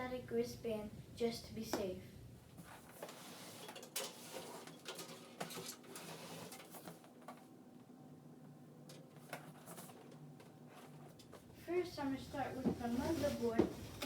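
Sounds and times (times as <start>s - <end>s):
soft rustling: 2.5s - 4.9s, 9.1s - 14.0s.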